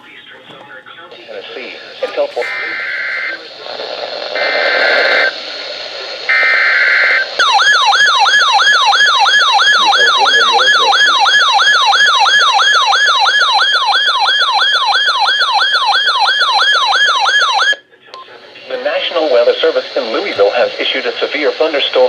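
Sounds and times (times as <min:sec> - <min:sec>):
radio hiss: 0:00.0 - 0:07.4, 0:09.7 - 0:11.3, 0:17.9 - 0:22.0
digital data tones: 0:06.3 - 0:17.8
electronic siren yelping: 0:06.3 - 0:17.8.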